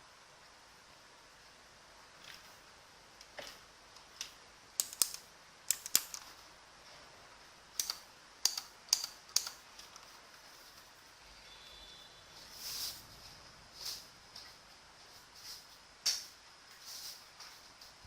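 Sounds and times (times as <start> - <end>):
clicky keyboard key presses: 4.8 - 6.3, 7.8 - 9.6.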